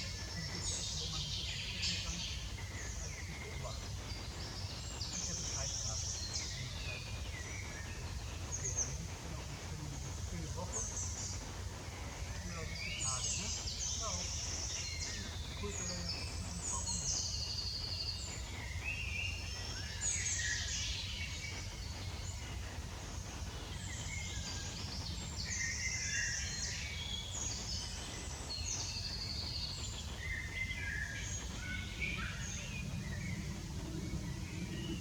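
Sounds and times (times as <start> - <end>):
birds chirping and trilling: 0.0 - 35.0
steady low rumble: 0.0 - 35.0.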